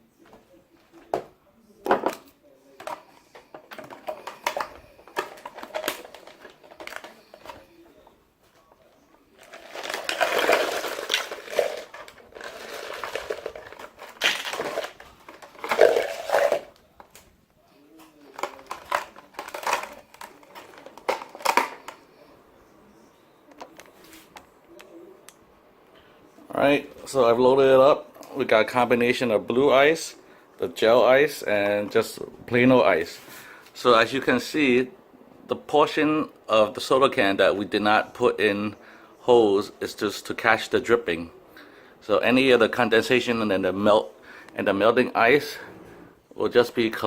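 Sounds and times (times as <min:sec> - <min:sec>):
ice clattering against plastic: 0:02.8 - 0:07.6, 0:09.4 - 0:16.8, 0:18.3 - 0:22.0
ice rattling and rustling: 0:02.8 - 0:07.6, 0:09.4 - 0:16.8, 0:18.3 - 0:22.0.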